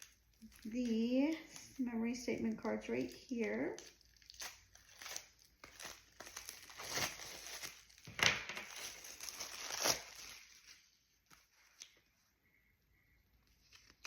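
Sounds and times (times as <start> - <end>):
packaging crinkling and tearing: 0.0 - 12.1, 13.4 - 14.0.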